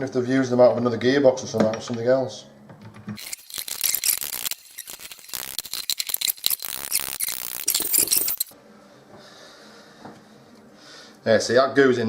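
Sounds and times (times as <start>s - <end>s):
metal parts clinking and rattling: 3.2s - 8.6s.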